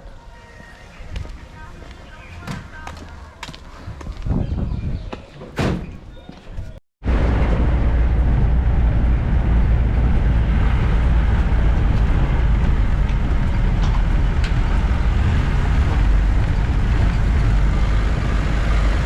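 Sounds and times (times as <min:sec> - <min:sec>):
motor vehicle rumbling: 0:06.7 - 0:19.0.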